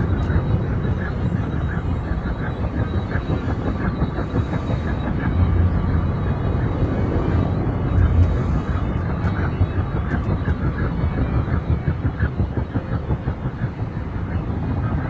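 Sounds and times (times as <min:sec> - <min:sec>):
helicopter rotor and engine: 0:00.0 - 0:15.0.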